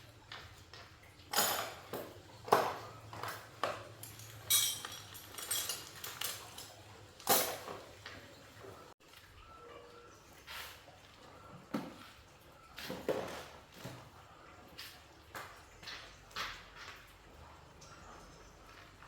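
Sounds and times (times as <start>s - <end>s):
metal objects clinking: 1.3s - 8.1s.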